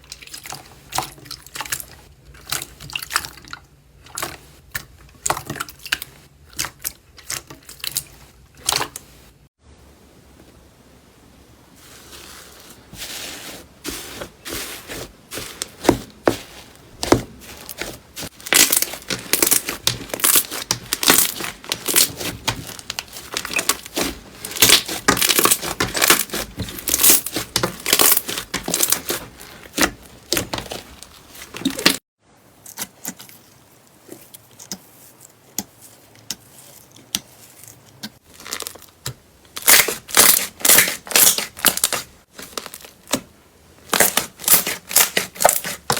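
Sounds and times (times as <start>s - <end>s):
slime crackling and popping: 17.0s - 32.0s, 38.3s - 43.2s.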